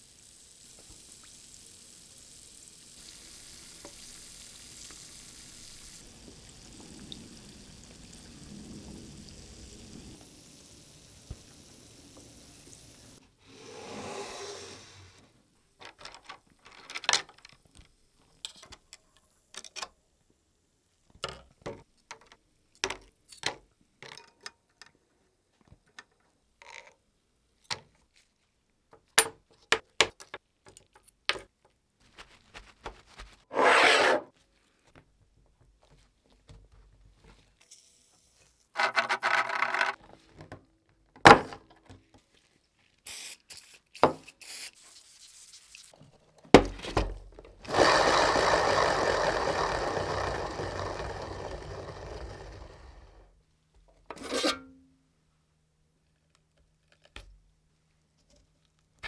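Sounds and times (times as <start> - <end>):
scraping and rubbing: 32.0 - 34.4, 38.8 - 40.0
objects clicking and tapping: 38.8 - 40.0.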